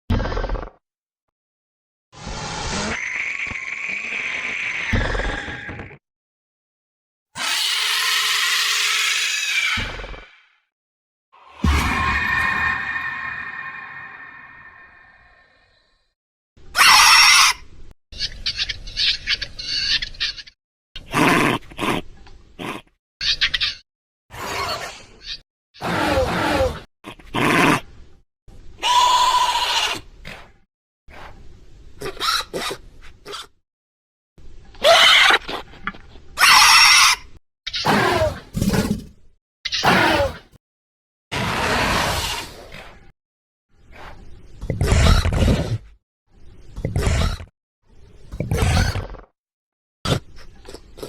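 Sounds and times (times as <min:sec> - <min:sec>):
creature screeching: 0:02.5 - 0:06.0, 0:07.4 - 0:10.6, 0:11.4 - 0:16.0, 0:16.8 - 0:17.6, 0:28.8 - 0:30.0, 0:34.8 - 0:35.4, 0:36.4 - 0:39.0, 0:39.7 - 0:40.5, 0:41.3 - 0:42.6, 0:48.5 - 0:49.2
creature chirps: 0:07.4 - 0:10.6, 0:11.4 - 0:16.0, 0:39.7 - 0:40.5.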